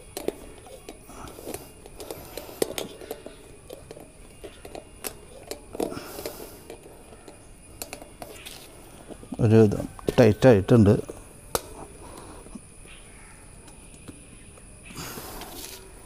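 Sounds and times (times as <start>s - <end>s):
light clicks and scrapes: 0.1s - 10.2s, 15.0s - 16.0s.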